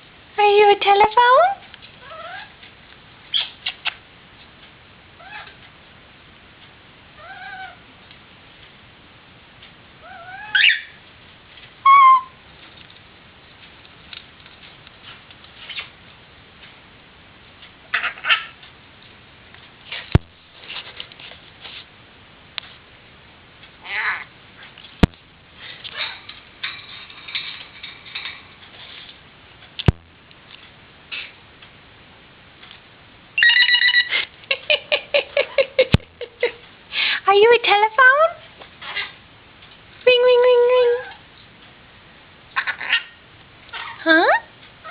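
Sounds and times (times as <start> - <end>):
parrot squawking: 2.0 - 2.5, 3.3 - 4.0, 5.2 - 5.6, 7.2 - 7.8, 10.0 - 11.0, 11.8 - 12.4, 17.9 - 18.6, 23.8 - 24.3, 25.9 - 26.3, 33.4 - 34.2, 42.6 - 44.9
parrot whistling: 10.0 - 11.0, 11.8 - 12.4, 33.4 - 34.1.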